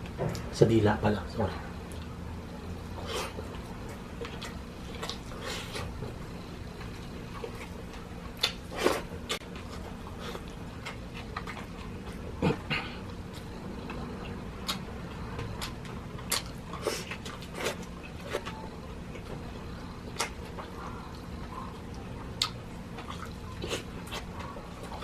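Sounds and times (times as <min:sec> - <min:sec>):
chewing mouth noises: 0:02.9 - 0:25.0.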